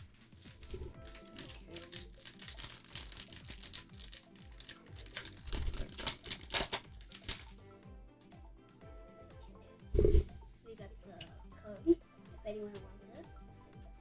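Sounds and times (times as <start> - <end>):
foil wrapper crinkling and tearing: 0.0 - 7.6
background music: 0.0 - 14.0.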